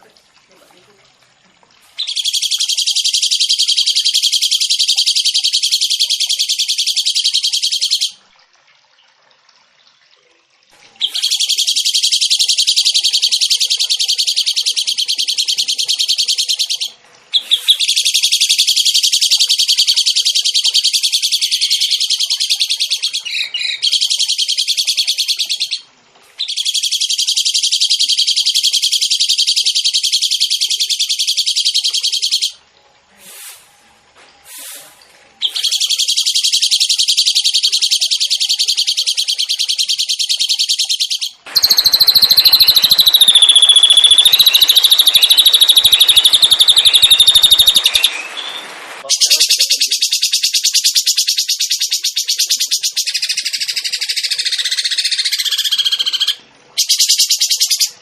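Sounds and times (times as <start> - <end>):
songbird rapid trills: 2.0 - 8.2, 11.0 - 25.8, 26.4 - 32.6, 35.4 - 48.4.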